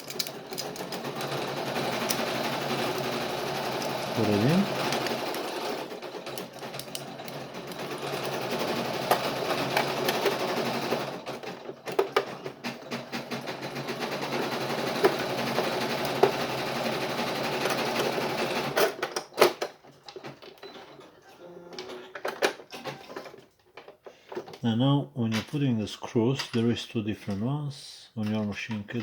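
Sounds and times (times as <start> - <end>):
embroidery machine running: 0.2 - 11.3.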